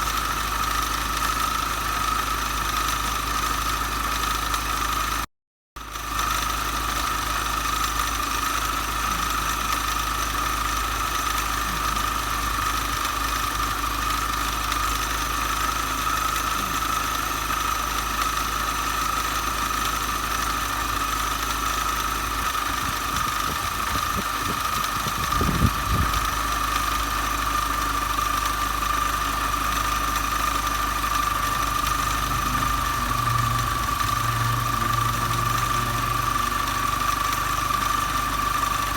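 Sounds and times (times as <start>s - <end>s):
car engine idling: 0.0s - 38.9s
high-pitched whine: 31.2s - 38.9s.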